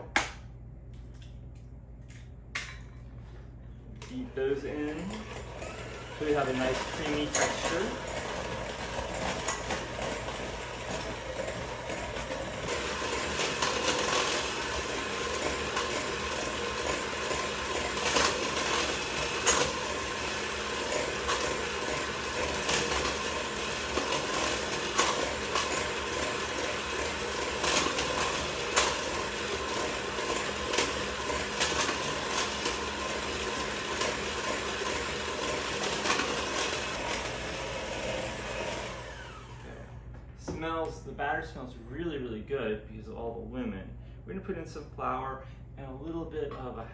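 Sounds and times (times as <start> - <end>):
electric mixer running: 4.2 - 40.2.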